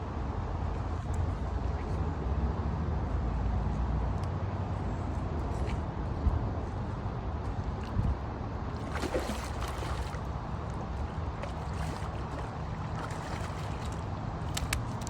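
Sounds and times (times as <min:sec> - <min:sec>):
river water rushing: 0:08.8 - 0:14.4.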